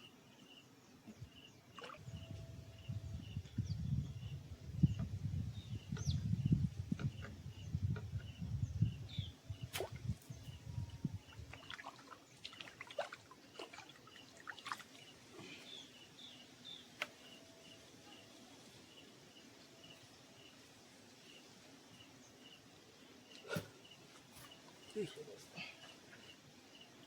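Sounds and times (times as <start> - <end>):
wind buffeting microphone: 2.0 - 11.7.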